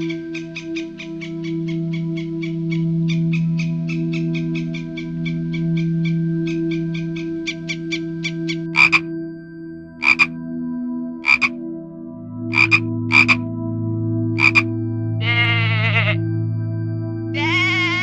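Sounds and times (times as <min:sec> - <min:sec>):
frog croaking: 0:08.7 - 0:09.1, 0:10.0 - 0:10.4, 0:11.2 - 0:11.6, 0:12.5 - 0:13.4, 0:14.4 - 0:16.2, 0:17.4 - 0:18.0.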